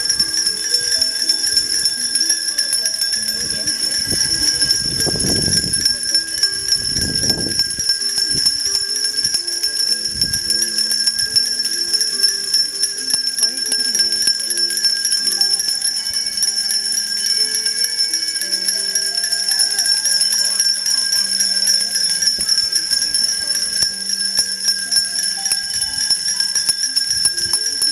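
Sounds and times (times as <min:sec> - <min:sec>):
many bells jangling: 0:00.0 - 0:27.9
murmur of voices: 0:00.0 - 0:27.9.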